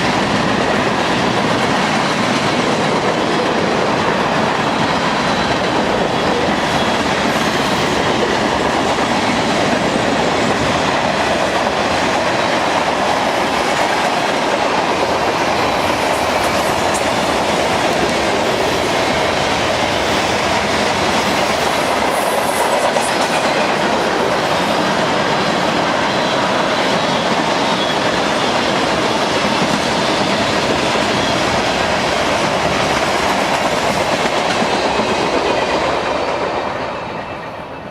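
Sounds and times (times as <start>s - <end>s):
train wheels on rails: 0.0s - 37.9s.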